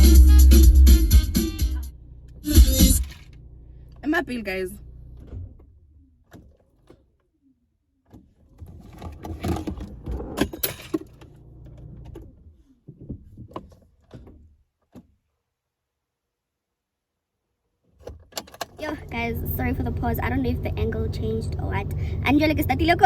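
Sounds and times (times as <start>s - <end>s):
clatter: 2.3s - 4.0s, 8.1s - 15.0s
knocks and clicks of handling: 8.0s - 15.2s, 17.9s - 18.8s.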